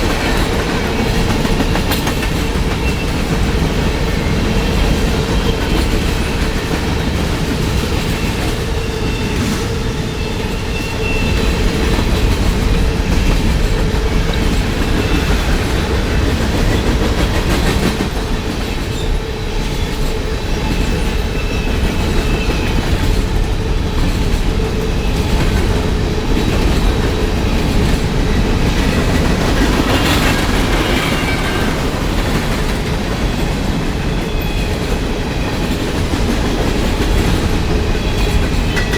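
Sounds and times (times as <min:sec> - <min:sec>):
train wheels clattering: 0:00.0 - 0:38.9
high wheel squeals: 0:29.7 - 0:32.6.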